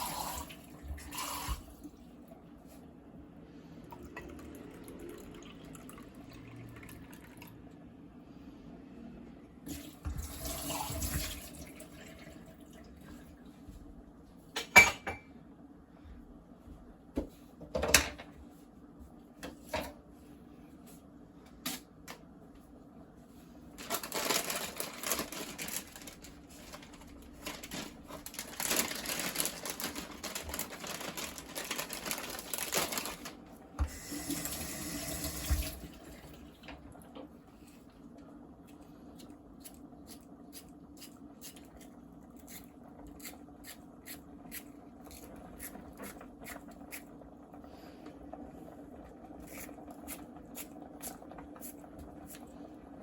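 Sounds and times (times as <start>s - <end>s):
water tap running: 0.0s - 1.7s, 9.7s - 12.2s, 33.8s - 36.4s
kitchen knocks and clatters: 17.2s - 18.4s.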